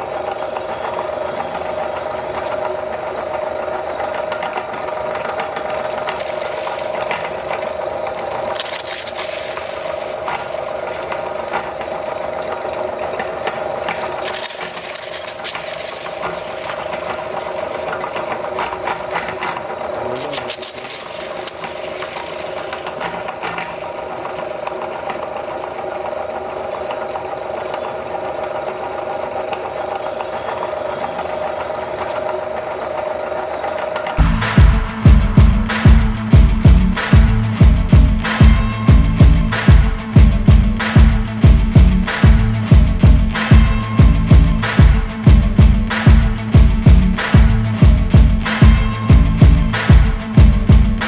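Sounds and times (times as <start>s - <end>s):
meat grinder motor humming: 0.0s - 34.4s
crackling bursts: 5.6s - 12.5s, 13.4s - 25.1s, 38.2s - 51.0s.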